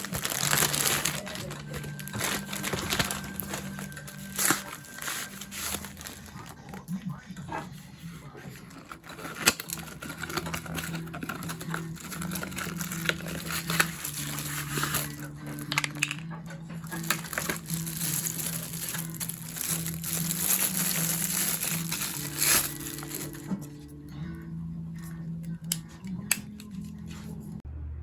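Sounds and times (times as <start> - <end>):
plastic packaging crinkling: 0.0 - 6.8, 8.5 - 23.9.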